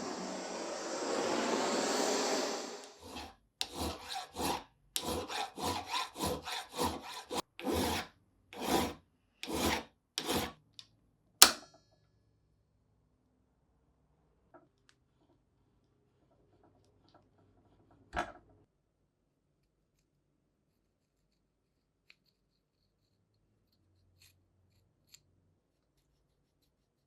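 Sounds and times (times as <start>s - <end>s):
hand scraping rusty steel: 2.9s - 10.6s.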